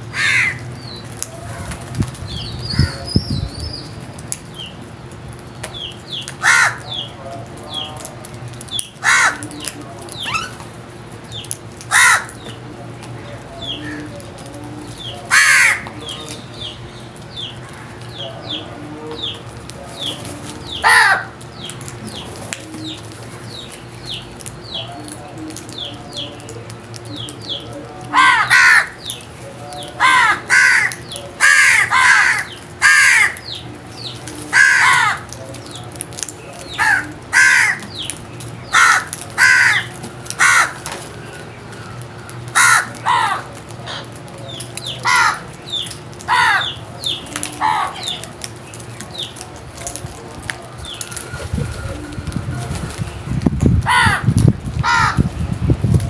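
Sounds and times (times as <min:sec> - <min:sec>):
small birds chirping: 0:00.0 - 0:53.8
crows cawing: 0:00.1 - 0:00.7, 0:02.7 - 0:03.1, 0:06.2 - 0:07.2, 0:08.9 - 0:10.5, 0:11.9 - 0:12.6, 0:15.1 - 0:16.3, 0:20.7 - 0:21.4, 0:28.0 - 0:29.2, 0:29.8 - 0:33.6, 0:34.4 - 0:35.4, 0:36.6 - 0:38.1, 0:38.7 - 0:44.2, 0:44.8 - 0:48.3, 0:53.8 - 0:55.3.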